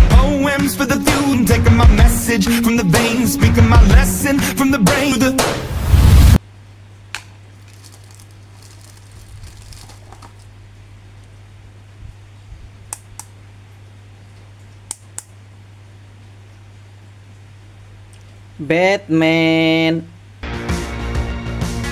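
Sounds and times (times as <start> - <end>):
steady low hum: 0.0 - 20.4
packaging crinkling: 7.1 - 11.3.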